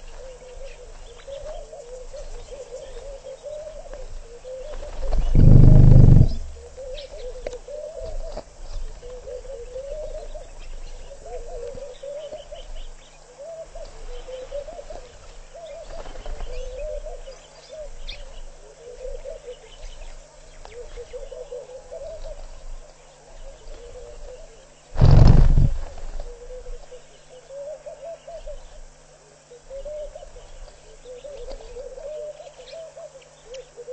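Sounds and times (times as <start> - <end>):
birds calling in low notes: 0.0 - 33.9
feathers rustling on microphone: 4.9 - 6.7, 25.0 - 26.3.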